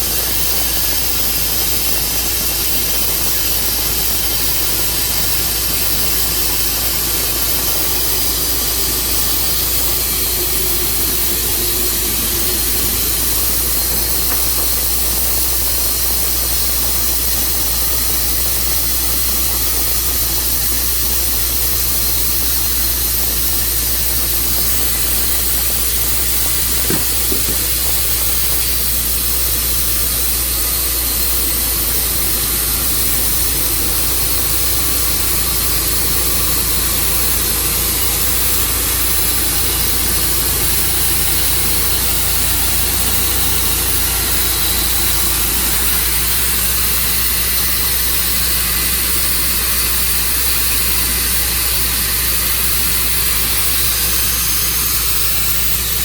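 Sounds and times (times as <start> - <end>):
engine drone: 0.0 - 56.0
saw cutting wood with hissing whine: 0.0 - 56.0.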